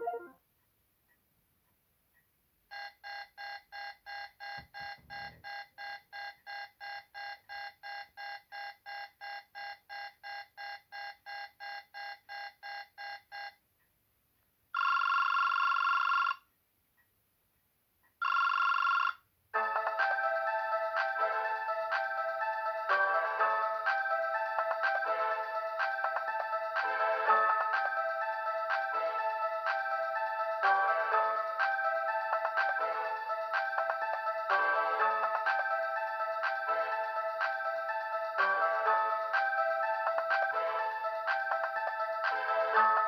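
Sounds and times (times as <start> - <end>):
electronic beeping ringtone: 0.0 - 0.3, 18.2 - 43.0
melodic ringtone tune: 0.0 - 0.3, 19.6 - 43.0.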